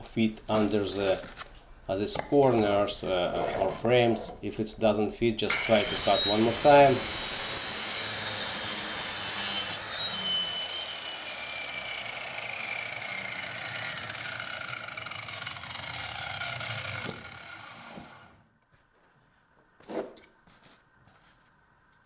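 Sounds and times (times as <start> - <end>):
electric saw cutting metal: 5.5 - 18.4.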